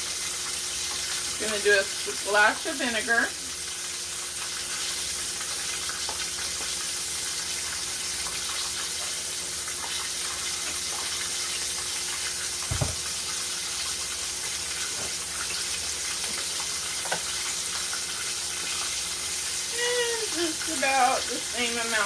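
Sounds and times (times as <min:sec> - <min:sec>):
chicken sizzling in hot oil: 0:00.0 - 0:22.0
dull thump: 0:12.7 - 0:13.1.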